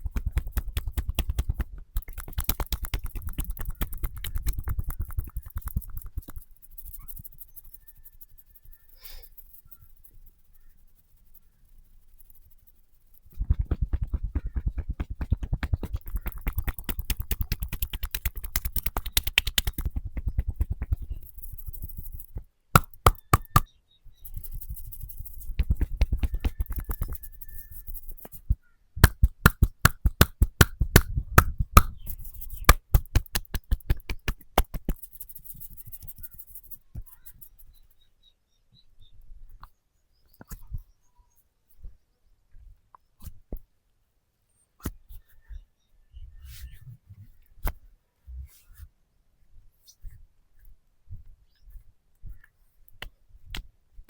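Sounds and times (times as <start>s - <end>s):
hand tapping and slapping: 0.0s - 6.5s, 13.3s - 23.7s, 25.2s - 27.3s, 28.1s - 36.2s, 53.0s - 53.7s.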